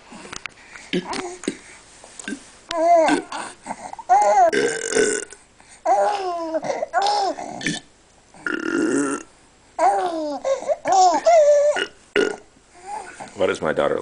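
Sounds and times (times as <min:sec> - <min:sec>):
adult burping noises: 0:00.9 - 0:02.4, 0:04.5 - 0:05.4, 0:07.5 - 0:09.3, 0:11.8 - 0:12.5
baby squealing laughter: 0:09.8 - 0:11.8.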